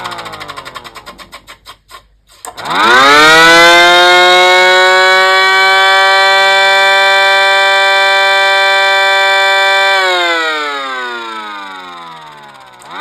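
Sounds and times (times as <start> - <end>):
air raid siren wailing: 2.7 - 13.0.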